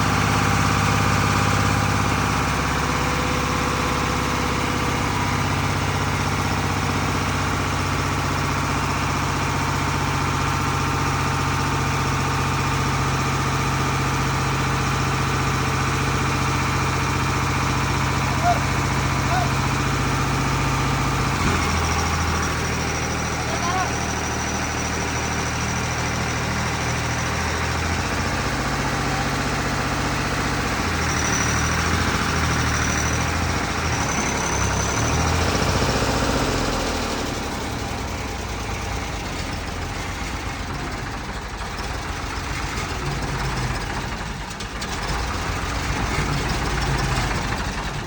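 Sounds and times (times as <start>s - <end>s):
vehicle engine running: 0.0s - 48.0s.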